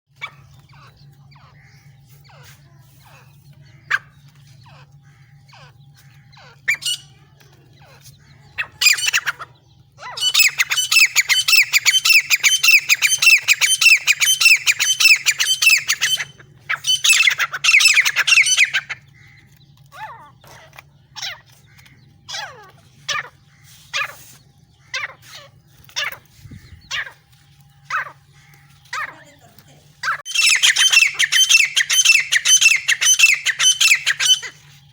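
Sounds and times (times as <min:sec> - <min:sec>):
francolin calling: 0:08.3 - 0:19.0, 0:30.0 - 0:34.8.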